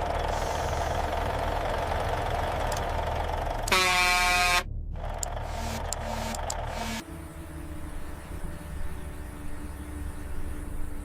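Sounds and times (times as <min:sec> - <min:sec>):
engine hum: 0:00.0 - 0:11.0
vehicle horn blast: 0:03.7 - 0:04.7.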